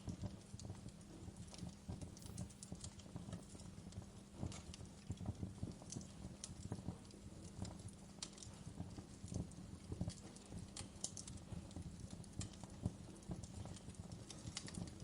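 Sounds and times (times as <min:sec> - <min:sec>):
burning wood crackling: 0:01.6 - 0:03.0.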